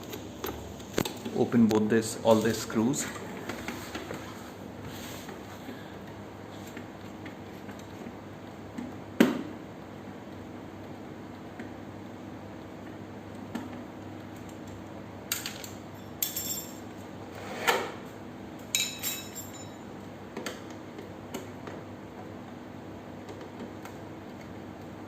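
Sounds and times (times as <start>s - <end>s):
metallic clinks of tools and screws: 15.5s - 16.8s, 18.7s - 19.8s.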